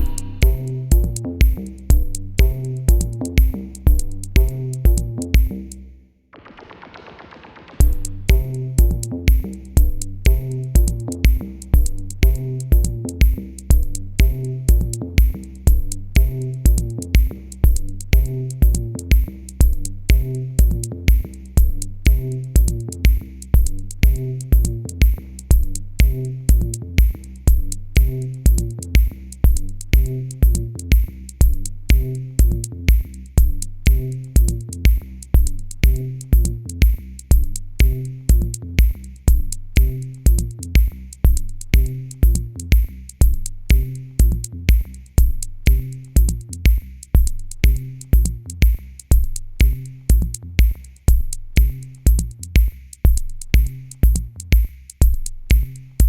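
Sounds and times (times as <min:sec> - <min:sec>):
high ticking percussion: 0:00.0 - 0:05.6, 0:06.4 - 0:56.0
synth bass line: 0:00.0 - 0:05.7, 0:07.8 - 0:34.7
drum machine kick drum: 0:00.0 - 0:05.8, 0:06.4 - 0:56.0.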